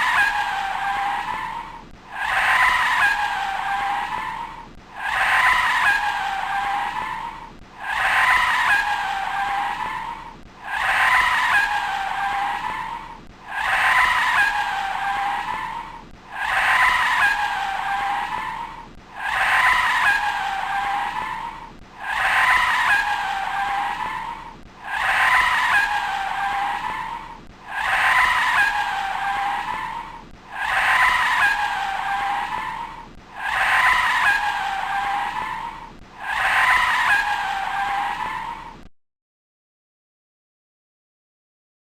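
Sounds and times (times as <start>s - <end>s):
high-pitched car wail: 27.7s - 32.8s, 33.4s - 38.5s.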